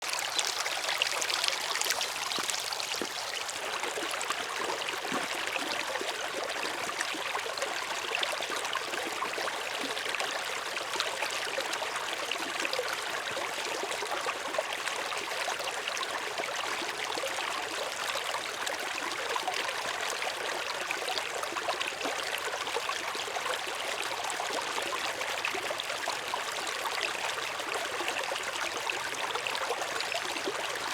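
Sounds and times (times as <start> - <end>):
river water flowing: 0.0 - 6.4.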